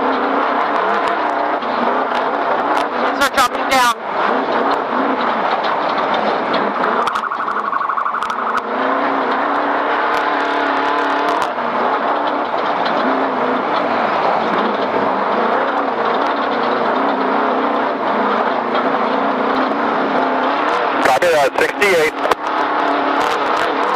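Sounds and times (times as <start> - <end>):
race car engine revving: 0.0 - 23.9.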